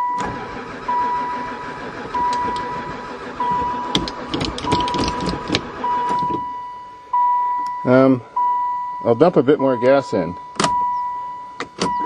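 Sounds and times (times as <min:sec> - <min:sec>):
dashboard warning chime beeping: 0:00.0 - 0:12.0.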